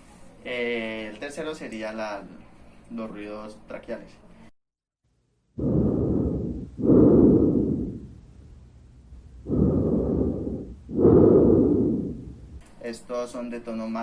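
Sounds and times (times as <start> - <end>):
breathing: 5.6 - 12.6.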